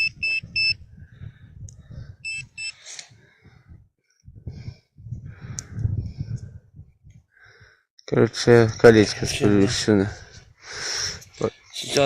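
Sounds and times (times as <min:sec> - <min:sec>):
metal detector beeping: 0:00.0 - 0:00.8, 0:02.2 - 0:02.8.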